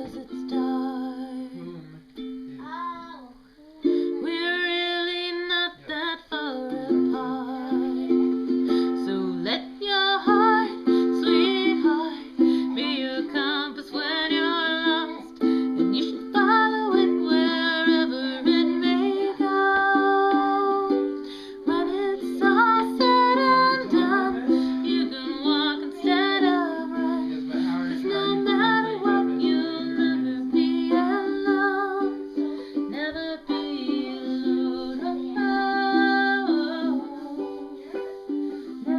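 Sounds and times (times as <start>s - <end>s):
song with plucked accompaniment: 0.0s - 38.9s.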